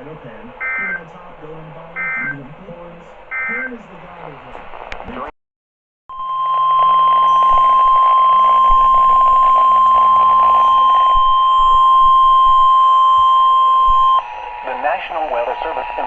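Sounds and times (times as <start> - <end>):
high steady alarm tone: 0.6 - 1.1, 2.0 - 2.5, 3.3 - 3.8, 6.1 - 16.0.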